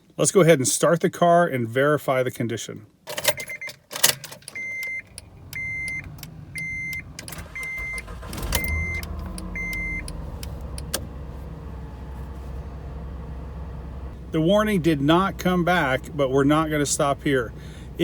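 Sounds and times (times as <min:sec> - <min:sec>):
clicks: 0:03.1 - 0:11.1
car engine starting and idling: 0:03.2 - 0:18.0
car warning chime beeping: 0:03.3 - 0:03.8, 0:04.4 - 0:18.0.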